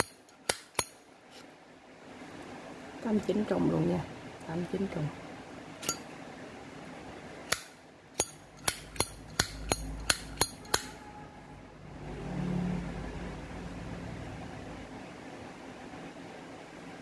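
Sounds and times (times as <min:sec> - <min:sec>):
low hum: 0:08.8 - 0:16.6.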